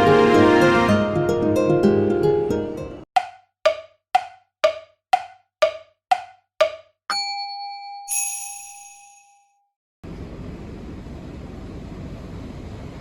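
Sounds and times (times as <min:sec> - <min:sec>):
wood block ticks: 0:03.2 - 0:07.0.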